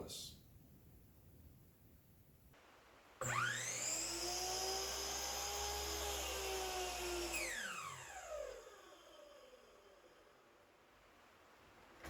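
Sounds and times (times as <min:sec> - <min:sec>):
power tool motor whining: 0:03.2 - 0:08.8.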